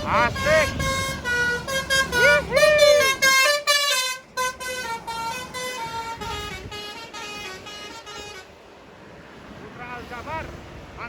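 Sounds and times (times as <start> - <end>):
multi-tone bus air horn melody: 0.0 - 8.8.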